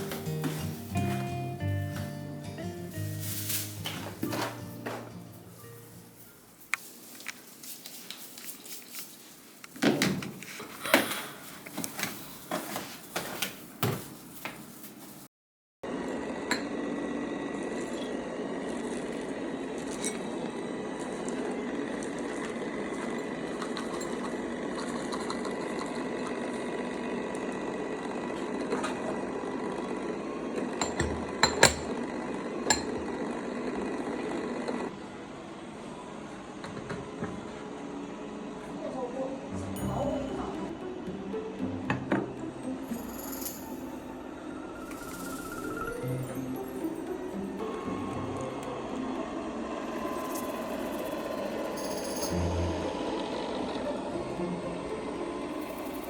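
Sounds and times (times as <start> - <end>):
steady background hum: 34.8 - 56.0.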